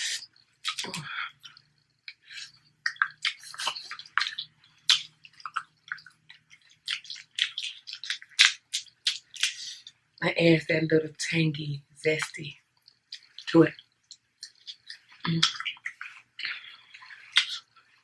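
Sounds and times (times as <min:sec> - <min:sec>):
person eating with wet smacking: 0:00.0 - 0:10.0, 0:12.7 - 0:18.0.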